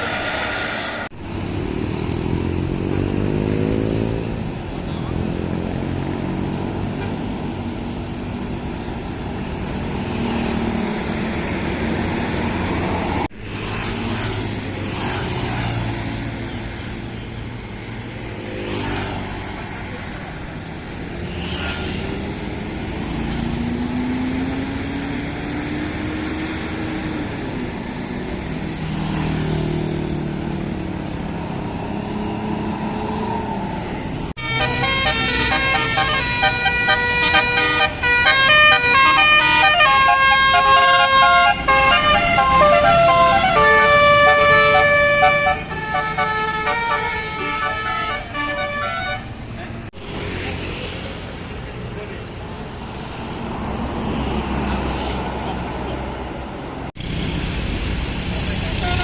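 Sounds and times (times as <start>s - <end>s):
bus diesel engines: 0.0s - 59.0s
passing traffic: 0.0s - 59.0s
multi-note bus horn tune: 34.4s - 49.4s, 58.8s - 59.0s.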